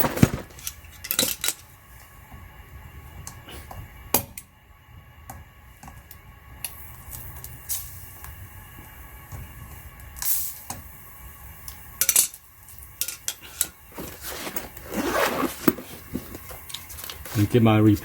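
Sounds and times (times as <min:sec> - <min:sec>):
scraping and rustling: 0:00.0 - 0:01.4, 0:13.4 - 0:17.6
metal tools clinking: 0:00.0 - 0:01.6, 0:13.0 - 0:17.4.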